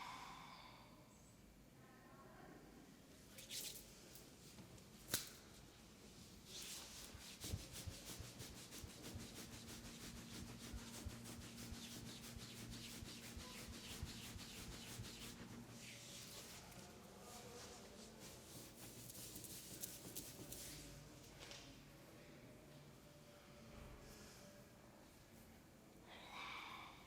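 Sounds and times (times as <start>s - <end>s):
hands rubbing skin: 3.3s - 4.2s, 6.4s - 17.0s, 17.6s - 20.8s.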